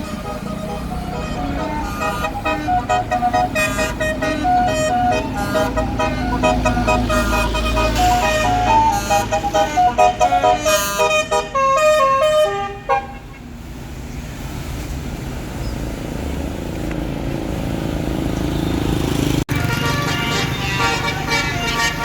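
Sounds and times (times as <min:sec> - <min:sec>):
bus horn playing a tune: 0:00.0 - 0:13.6, 0:19.5 - 0:22.0
vehicle engine and road noise: 0:00.0 - 0:22.0.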